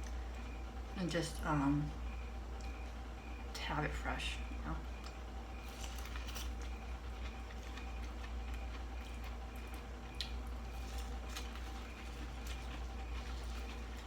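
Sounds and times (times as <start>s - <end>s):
chewing and handling food: 0.0s - 1.5s, 4.8s - 14.0s
low electrical hum: 0.0s - 14.0s.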